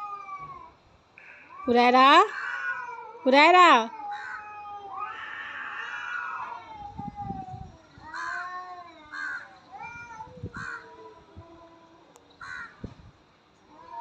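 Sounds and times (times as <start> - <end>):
cat yowling: 0.0 - 0.7, 1.7 - 11.2
cat harsh cries: 1.7 - 11.0.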